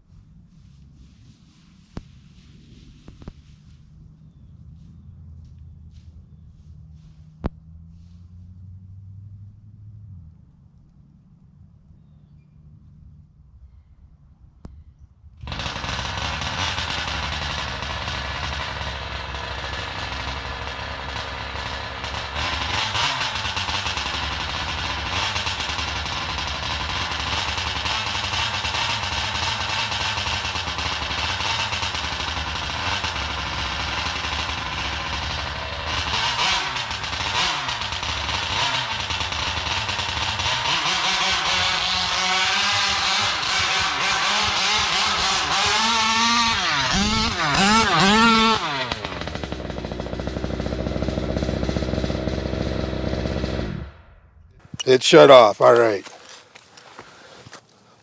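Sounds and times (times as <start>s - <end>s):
two-stroke engine revving: 15.5s - 53.6s.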